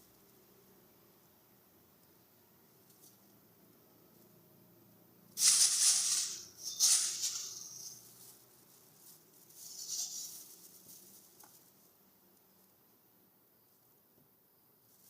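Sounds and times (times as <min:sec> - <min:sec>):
plastic crinkling and rustling: 0:05.4 - 0:12.0.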